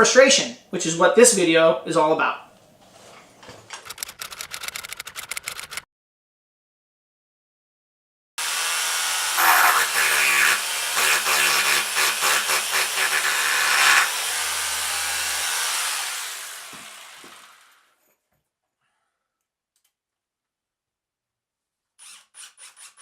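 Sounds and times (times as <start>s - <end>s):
power drill driving screws: 8.4s - 17.9s, 22.0s - 23.0s.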